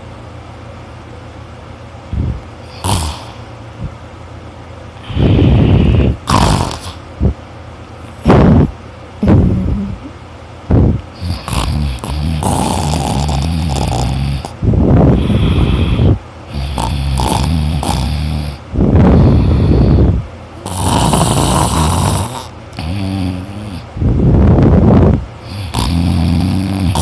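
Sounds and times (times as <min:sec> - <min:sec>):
person snoring loudly: 0:02.6 - 0:03.5, 0:05.0 - 0:07.0, 0:11.2 - 0:23.9, 0:25.4 - 0:27.0.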